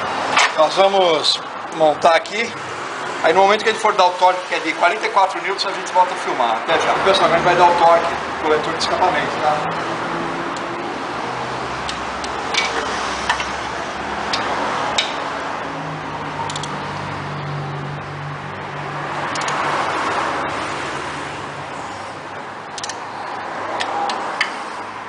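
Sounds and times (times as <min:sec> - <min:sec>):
workshop background noise: 0:00.0 - 0:25.0
torque wrench clicks: 0:16.5 - 0:16.8, 0:19.3 - 0:19.6, 0:22.7 - 0:23.0.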